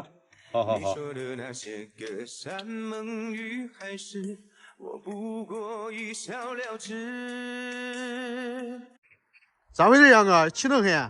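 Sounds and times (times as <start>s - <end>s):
man singing with vibrato: 0.8s - 9.0s.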